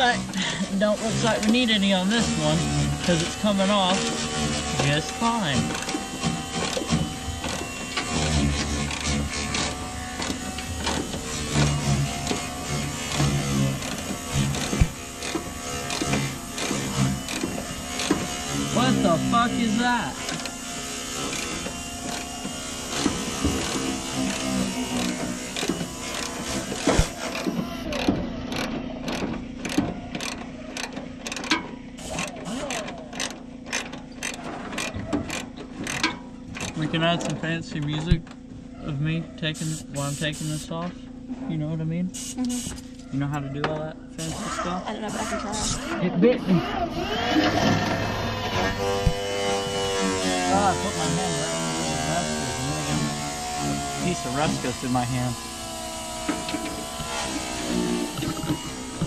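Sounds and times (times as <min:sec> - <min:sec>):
power tool bursts: 0:00.0 - 0:36.8, 0:42.2 - 0:42.9, 0:44.2 - 0:59.0
steady low hum: 0:00.0 - 0:59.0
sharp metallic clicks and knocks: 0:22.9 - 0:38.4.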